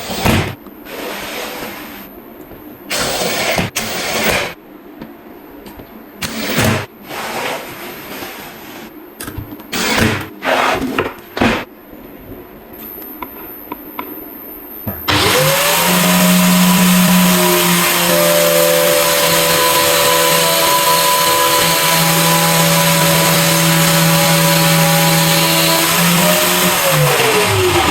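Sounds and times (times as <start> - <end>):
angle grinder whining: 15.0 - 27.9.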